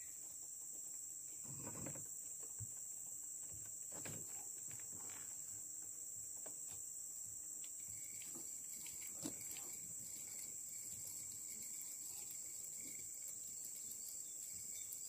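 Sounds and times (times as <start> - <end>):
high-pitched insect chorus: 0.0 - 15.0.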